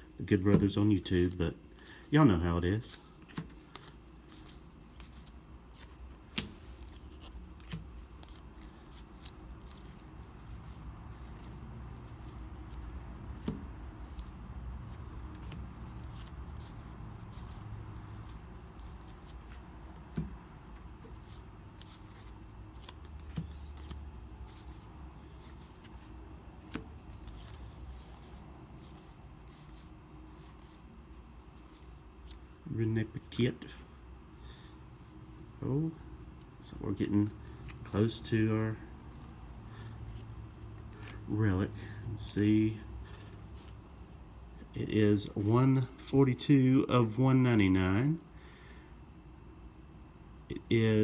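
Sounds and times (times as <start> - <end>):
low steady hum: 0.0 - 51.0
cards sliding and rustling: 0.3 - 32.5.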